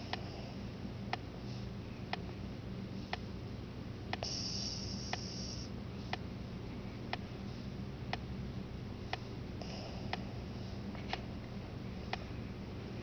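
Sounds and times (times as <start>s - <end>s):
high hiss: 4.2s - 5.7s.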